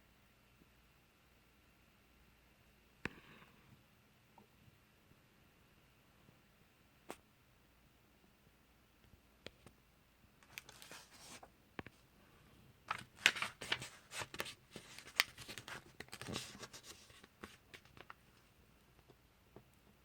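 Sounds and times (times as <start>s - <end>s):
paper pages rustling: 10.4s - 12.0s, 12.9s - 18.5s.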